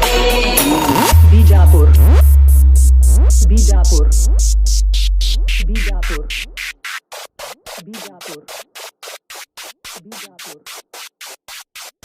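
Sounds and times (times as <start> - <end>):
chopped vocal fragments: 0.7 - 8.9
heavy sub-bass drone: 0.8 - 6.8
stuttering electronic beats: 0.8 - 12.0.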